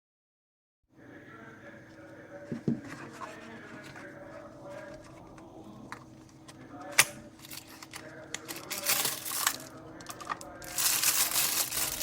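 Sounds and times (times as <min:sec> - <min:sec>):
packaging crinkling and rustling: 0:07.4 - 0:12.0.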